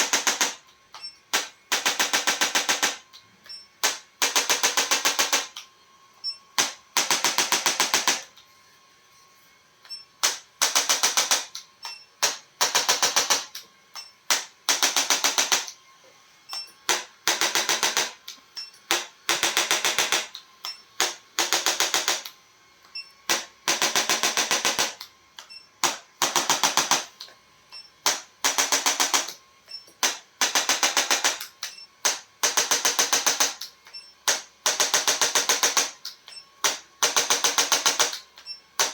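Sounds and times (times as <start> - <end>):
rapid mechanical clicking: 30.0 - 38.9.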